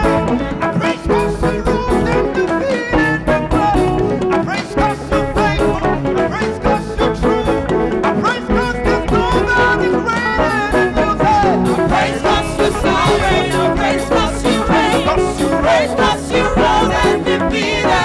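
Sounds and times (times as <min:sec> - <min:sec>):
drums fast beat: 0:00.0 - 0:18.0
live band playing upbeat song: 0:00.0 - 0:18.0.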